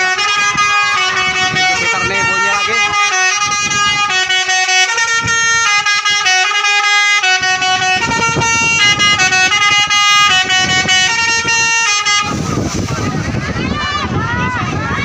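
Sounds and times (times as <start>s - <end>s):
multi-tone bus air horn melody: 0.0s - 12.8s
rough noise: 7.4s - 14.9s.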